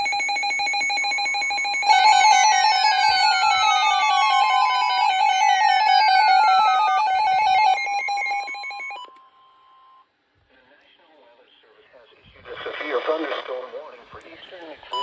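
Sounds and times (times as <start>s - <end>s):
pulsing electronic alert tones: 0.0s - 9.1s.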